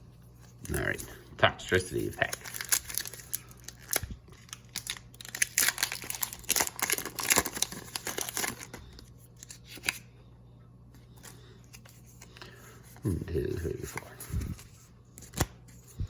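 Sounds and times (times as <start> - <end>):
foil wrapper tearing and crinkling: 2.2 - 10.0.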